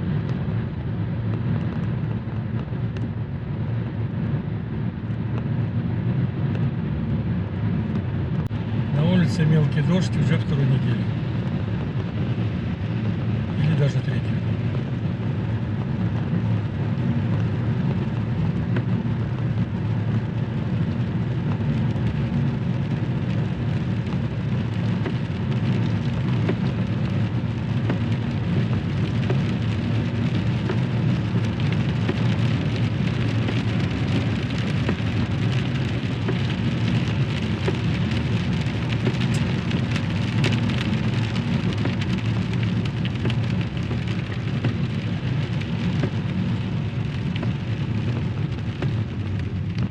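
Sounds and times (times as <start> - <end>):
car driving rumble: 0.0 - 49.9
rain drops ticking on a car: 0.1 - 49.9.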